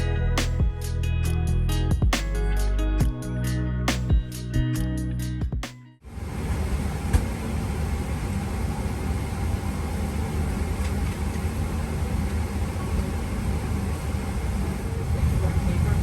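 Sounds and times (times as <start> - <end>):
airliner cabin rumble: 6.1 - 16.0.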